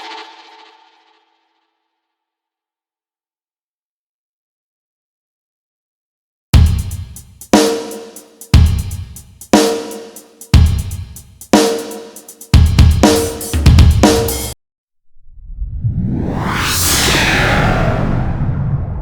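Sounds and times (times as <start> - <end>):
slow drum kit loop: 6.6 - 14.6
rising whoosh: 15.1 - 19.0.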